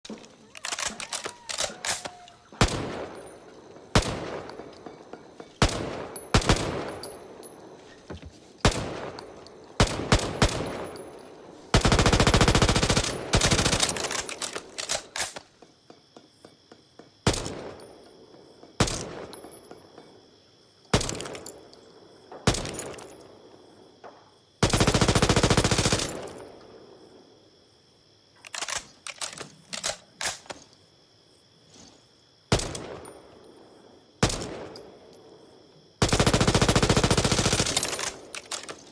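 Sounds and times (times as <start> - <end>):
submachine gun firing: 5.6 - 7.0, 9.8 - 10.9, 11.7 - 15.4, 24.6 - 26.4, 36.0 - 38.8.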